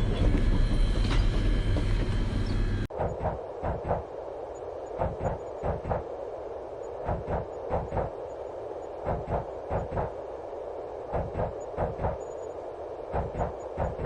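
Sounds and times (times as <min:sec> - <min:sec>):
train rumble: 0:00.0 - 0:04.2.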